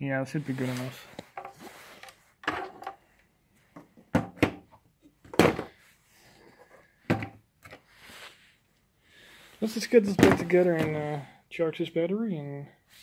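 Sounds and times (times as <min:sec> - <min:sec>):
knocks and clunks of handled parts: 0:01.2 - 0:03.0, 0:03.7 - 0:05.8, 0:07.0 - 0:07.8, 0:10.1 - 0:11.0.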